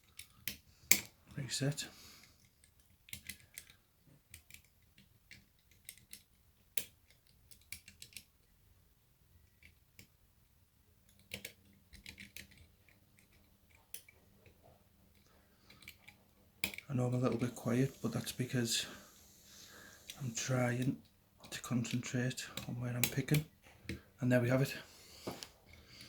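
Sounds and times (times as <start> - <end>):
lock pick clicks and scrapes: 11.1 - 14.2.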